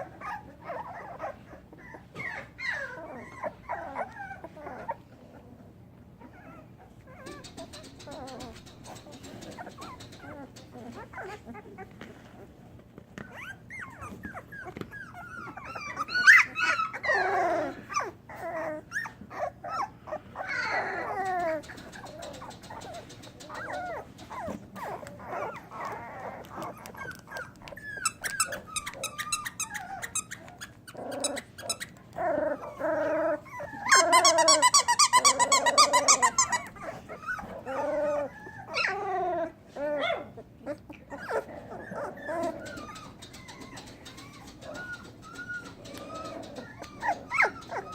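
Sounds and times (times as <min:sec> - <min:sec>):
puppies whining and yelping: 0:00.0 - 0:47.9
puppy squealing loudly: 0:13.3 - 0:40.4, 0:41.0 - 0:47.9.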